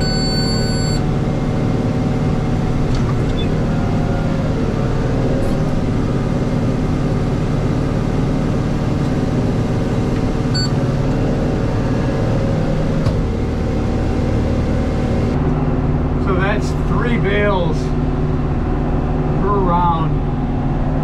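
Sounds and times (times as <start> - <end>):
short electronic beep: 0.0 - 1.0
tractor engine running under load: 0.0 - 21.0.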